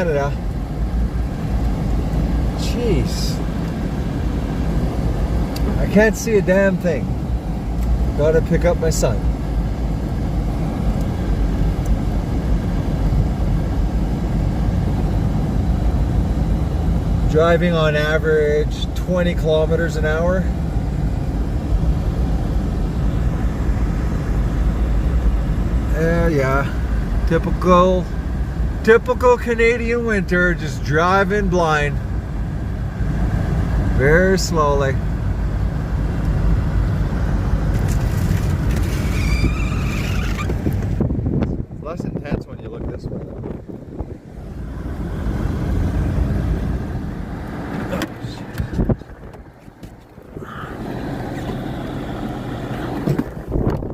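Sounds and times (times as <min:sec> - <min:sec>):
car driving through snow: 0:36.6 - 0:41.1, 0:44.4 - 0:53.9.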